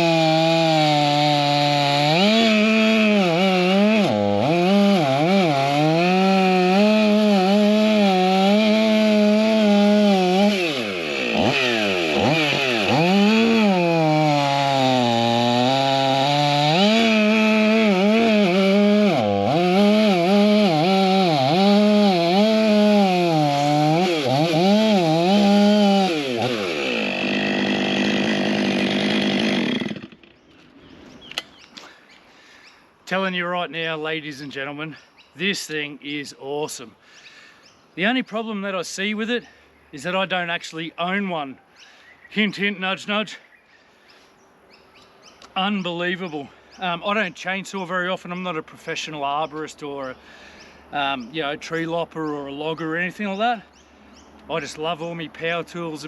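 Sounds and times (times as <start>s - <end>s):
chainsaw cutting log: 0.0s - 31.8s.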